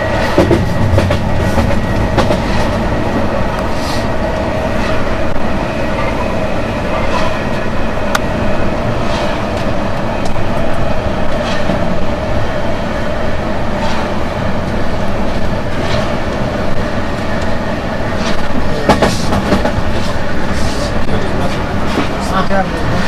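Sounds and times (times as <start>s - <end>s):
locomotive hum: 0.0s - 23.0s
train wheels rumbling on rail: 0.0s - 23.0s.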